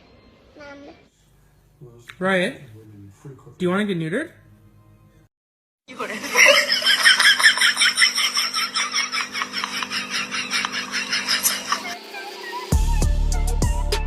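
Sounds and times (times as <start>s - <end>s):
laughter in short bursts: 5.9s - 12.0s.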